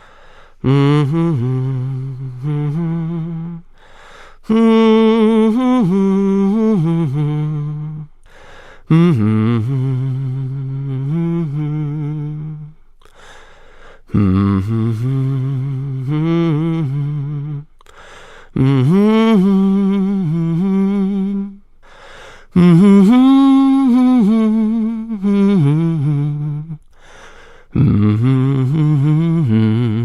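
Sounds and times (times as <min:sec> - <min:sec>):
man humming: 0:00.6 - 0:03.8, 0:14.1 - 0:21.6, 0:22.4 - 0:27.0, 0:27.6 - 0:30.0.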